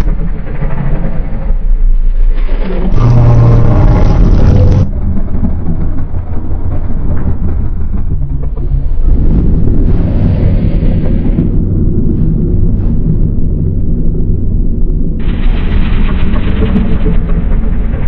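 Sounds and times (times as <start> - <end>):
heavy low rumble: 0.0 - 18.0
deep monster roar: 2.5 - 5.0.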